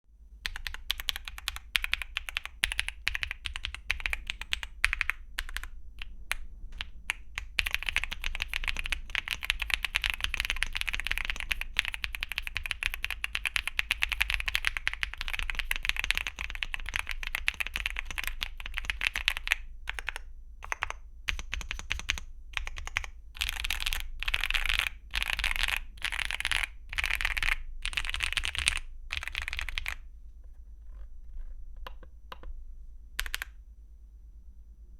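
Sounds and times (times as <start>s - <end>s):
mechanical keyboard typing: 0.4s - 30.0s, 33.2s - 33.6s.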